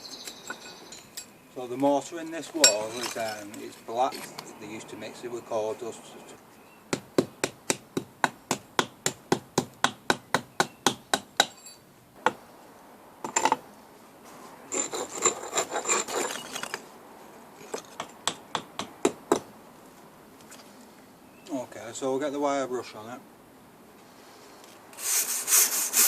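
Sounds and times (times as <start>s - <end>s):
chisel scraping with metallic ring: 2.6s - 4.5s, 11.4s - 11.8s, 14.7s - 16.8s.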